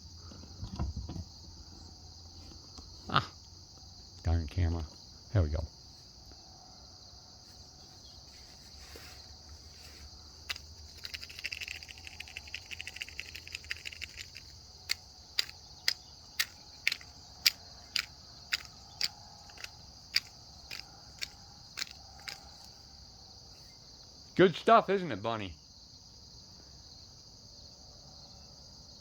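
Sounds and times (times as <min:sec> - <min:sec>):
crickets chirping: 0:00.0 - 0:29.0
rabbit chewing: 0:08.4 - 0:22.8
sharp clicks: 0:10.5 - 0:22.8.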